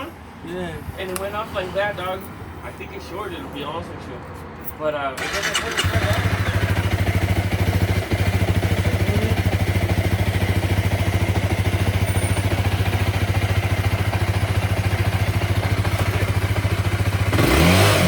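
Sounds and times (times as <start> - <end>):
motorcycle engine idling: 5.2 - 17.8.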